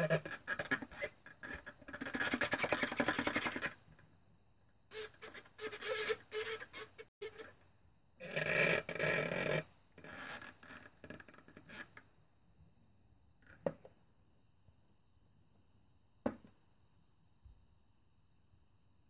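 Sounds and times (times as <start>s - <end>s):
plastic cup and straw scraping: 0.0s - 3.7s, 4.9s - 7.4s.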